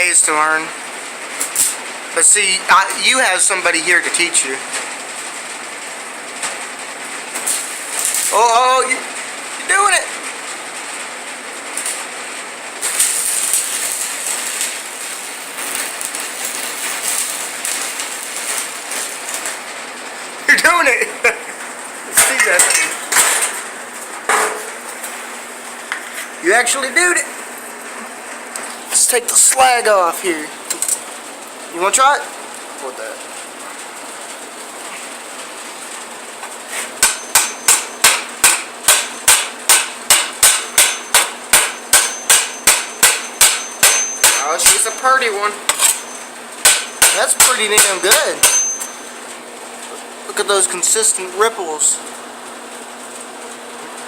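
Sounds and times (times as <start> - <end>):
welding arc crackling and sizzling: 0.0 - 54.0
hammer striking metal: 37.0 - 49.1.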